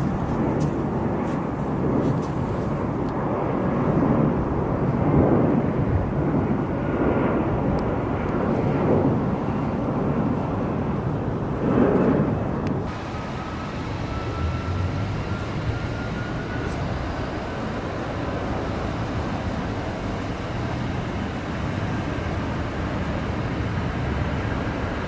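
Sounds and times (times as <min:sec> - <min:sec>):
jet engines rushing: 0:00.0 - 0:25.0
faint high whine: 0:11.8 - 0:25.0.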